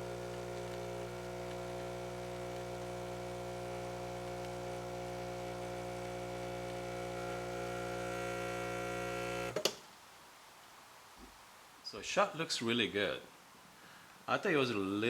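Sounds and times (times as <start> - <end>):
espresso machine pump humming: 0.0 - 9.6.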